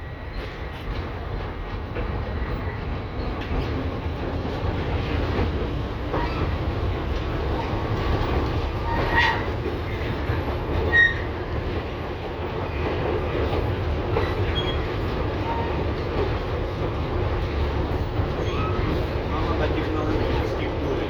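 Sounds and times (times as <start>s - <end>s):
tram wheels rumbling on rails: 0.0s - 21.0s
sharp wheel squeaks: 6.2s - 6.6s, 8.8s - 9.6s, 10.9s - 11.3s, 14.2s - 15.9s, 18.4s - 19.1s.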